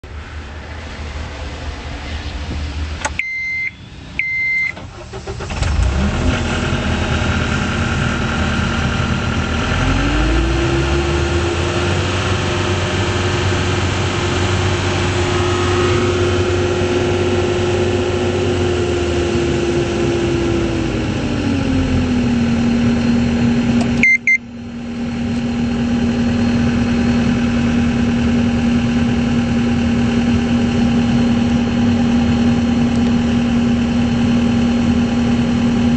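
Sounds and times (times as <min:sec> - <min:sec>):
diesel engine revving higher: 0:00.0 - 0:35.9
diesel engine starting and idling: 0:00.0 - 0:35.9
short beeps: 0:03.2 - 0:04.8, 0:24.0 - 0:24.4.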